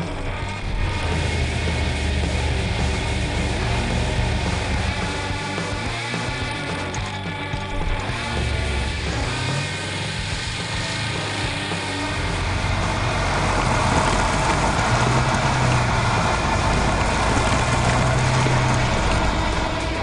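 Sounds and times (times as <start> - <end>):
vehicle engine running: 0.0 - 20.0.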